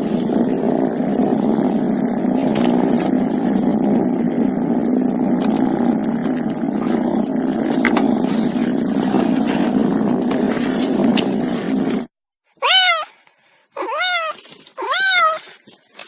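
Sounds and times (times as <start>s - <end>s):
big cat cub growling: 0.0s - 12.1s.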